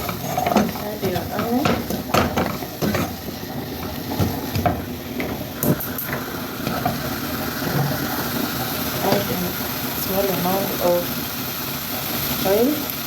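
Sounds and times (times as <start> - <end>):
spoon scraping a pan: 0.0 - 3.4
food frying in a pan: 0.0 - 13.0.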